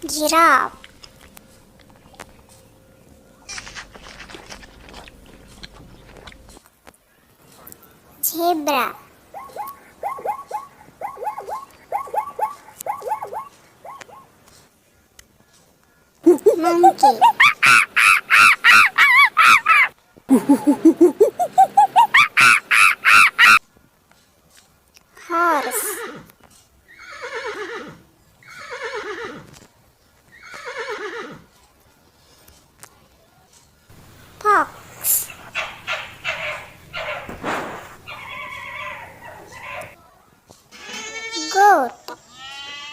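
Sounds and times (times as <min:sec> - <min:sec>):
zebra bark-like calls: 0:09.3 - 0:14.4, 0:17.2 - 0:19.9, 0:21.8 - 0:23.6, 0:35.3 - 0:40.0
horse neighing: 0:26.9 - 0:29.5.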